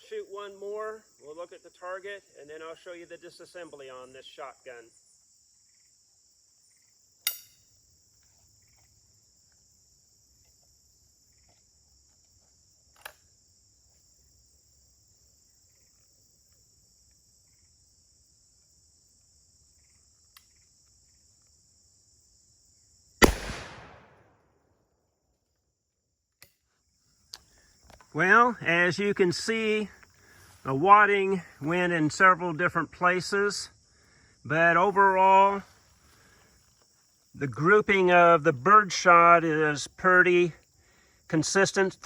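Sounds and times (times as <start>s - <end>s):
crickets chirring: 0.0s - 24.4s, 25.3s - 42.0s
sharp clicks: 23.2s - 24.2s
shotgun shot with echo: 23.2s - 24.3s.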